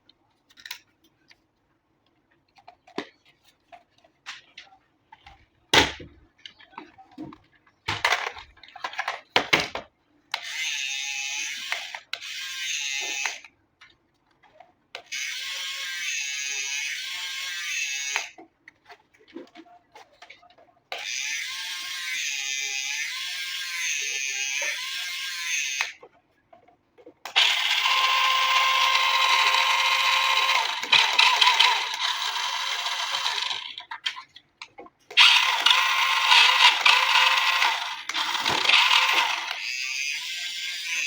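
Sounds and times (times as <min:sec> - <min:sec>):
plastic toy clicks and knocks: 0:07.9 - 0:10.5, 0:27.3 - 0:39.7
toy car motor buzzing whir: 0:15.1 - 0:18.4, 0:21.0 - 0:26.0, 0:27.3 - 0:33.8, 0:35.2 - 0:41.0.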